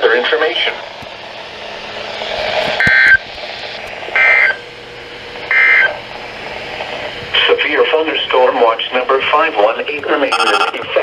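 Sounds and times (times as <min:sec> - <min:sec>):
radio hiss: 0:00.0 - 0:11.0
digital data tone bursts: 0:07.4 - 0:10.8.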